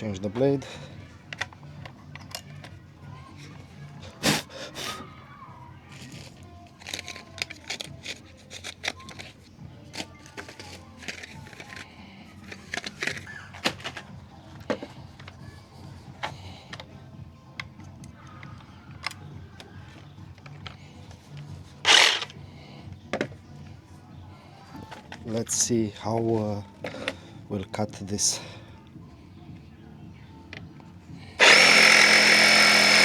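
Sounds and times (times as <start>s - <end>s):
background music: 0.0s - 33.0s
hands clicking and knocking on saw: 31.4s - 33.0s.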